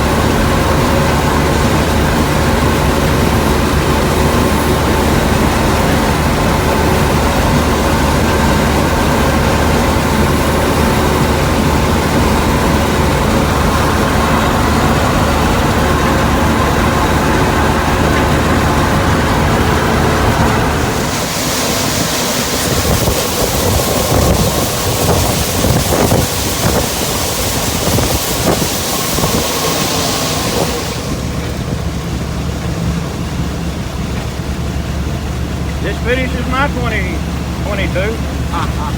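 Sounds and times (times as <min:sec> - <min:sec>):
combine harvester engine humming: 0:00.0 - 0:38.9
loud even hiss: 0:19.6 - 0:32.7.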